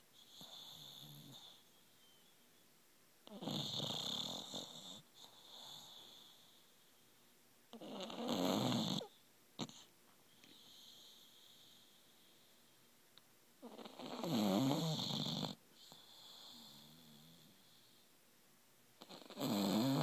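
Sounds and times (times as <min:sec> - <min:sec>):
dog snoring: 0:00.2 - 0:01.6, 0:03.2 - 0:06.7, 0:07.7 - 0:12.4, 0:13.6 - 0:17.9, 0:19.0 - 0:20.0
soft breaths: 0:04.4 - 0:07.5, 0:09.0 - 0:13.2, 0:15.5 - 0:18.3.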